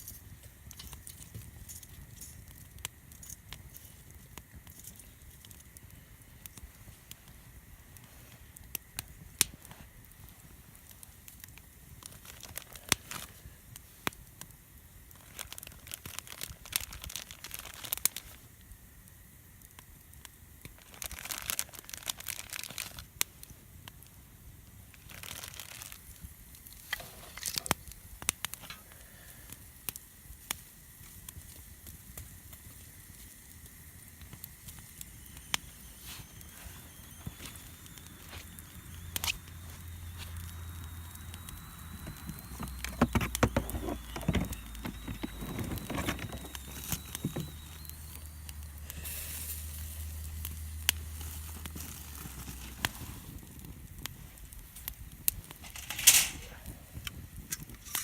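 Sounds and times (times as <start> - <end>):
campfire crackling and popping: 0.0 - 58.0
crinkling and rustling: 24.9 - 28.9, 34.3 - 48.6, 50.4 - 58.0.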